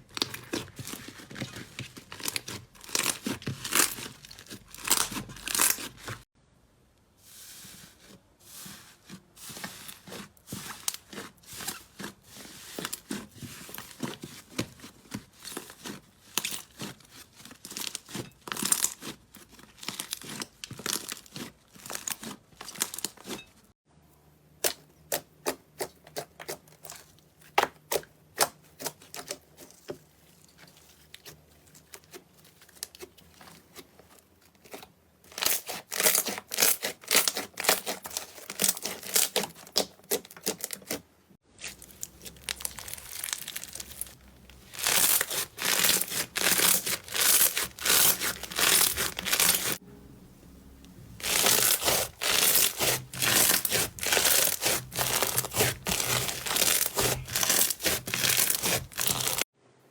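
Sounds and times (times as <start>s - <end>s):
slime crackling and popping: 2.0s - 6.2s, 41.6s - 49.8s, 51.2s - 59.4s.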